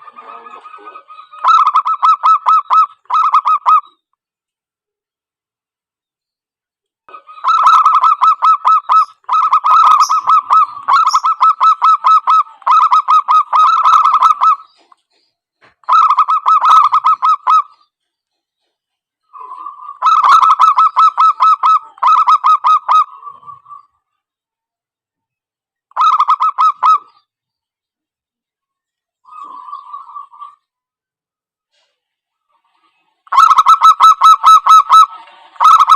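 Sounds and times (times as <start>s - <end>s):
dove cooing: 0.0s - 4.0s, 7.1s - 14.9s, 15.9s - 17.8s, 19.3s - 23.9s, 26.0s - 27.1s, 33.3s - 35.9s.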